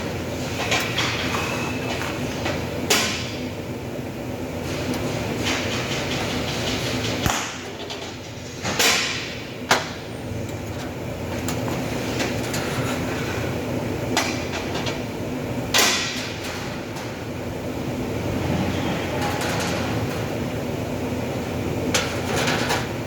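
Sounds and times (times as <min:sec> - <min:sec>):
workshop hum: 0:00.0 - 0:23.0.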